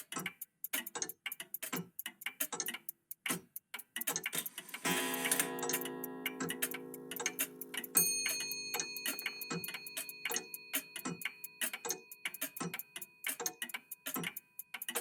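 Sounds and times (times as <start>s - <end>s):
clocks ticking: 0.0s - 15.0s
small high-pitched bell ringing: 5.0s - 14.7s.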